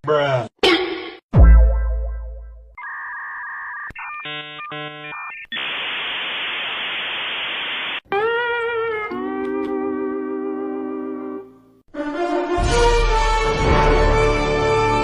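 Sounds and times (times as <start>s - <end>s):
steady electronic beep: 1.4s - 5.7s
static hiss: 5.5s - 8.0s.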